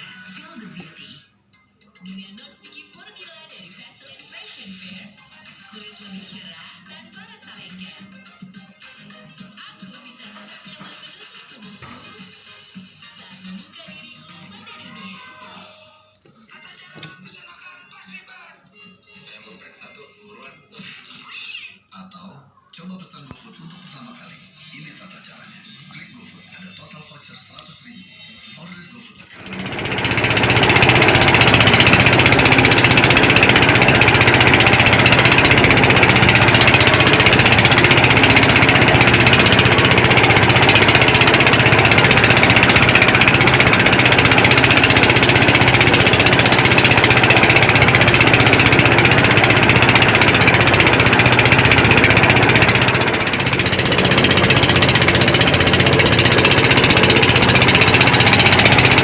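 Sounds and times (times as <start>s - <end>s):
small boat engine running: 29.3s - 59.0s.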